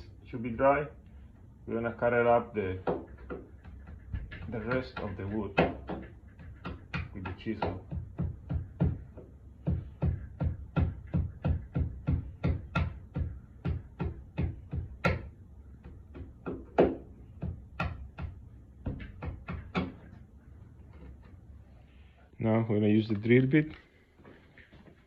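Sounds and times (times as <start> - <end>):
chisel being struck: 2.8 - 20.2.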